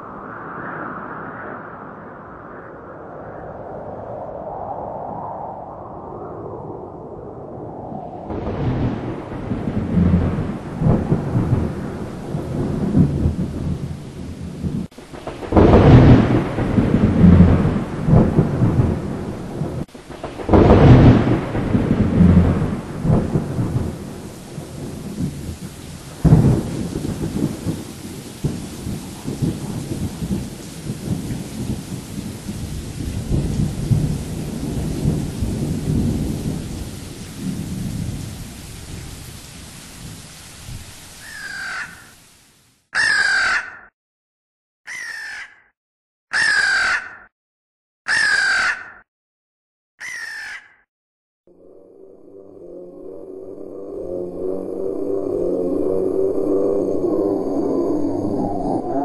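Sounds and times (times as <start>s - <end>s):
thunder rumbling: 0.0s - 41.7s, 52.6s - 59.0s
thunder crashes: 8.2s - 39.0s
sharp thunder crack: 8.3s - 39.0s
steady rain: 8.3s - 42.9s.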